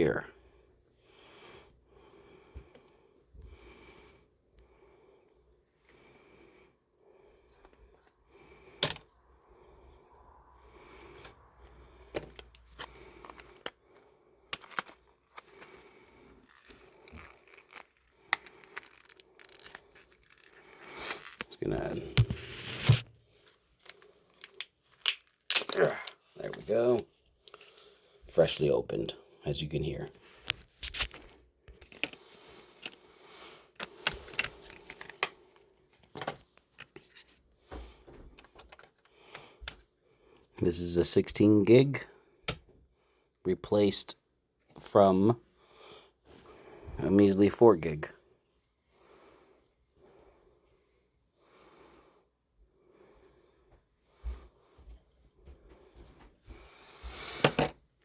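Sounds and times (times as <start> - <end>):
plastic crinkling and tearing: 14.5 - 21.6.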